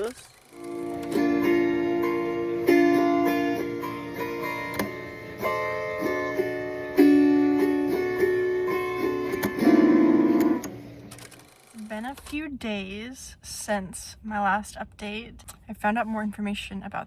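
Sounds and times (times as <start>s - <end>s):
plucked guitar melody: 0.0s - 11.3s.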